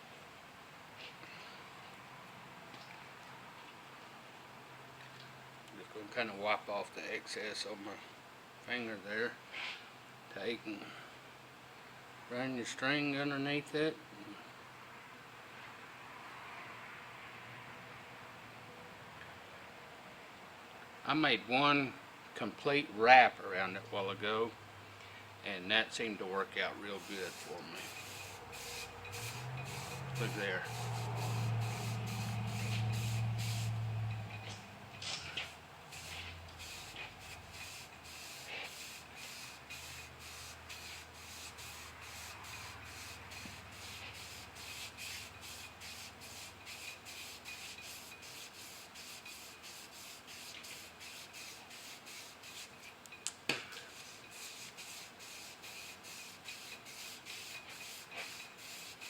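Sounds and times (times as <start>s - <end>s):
string rubbing on metal shaft: 26.9s - 52.9s.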